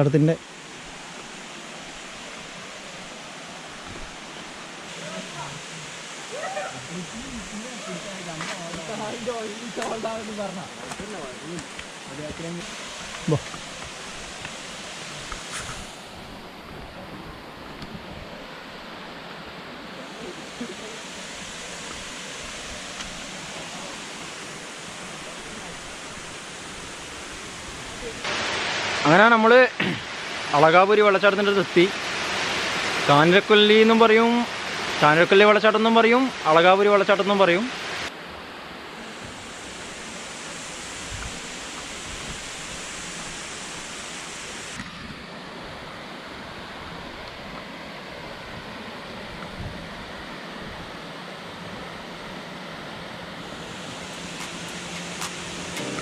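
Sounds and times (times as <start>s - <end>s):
waterfall rushing: 0.0s - 44.9s, 51.2s - 56.0s.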